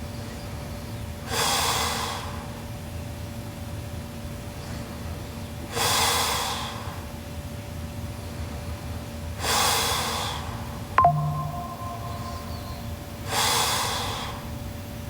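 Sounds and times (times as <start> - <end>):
faint steady hum: 11.0 - 13.2.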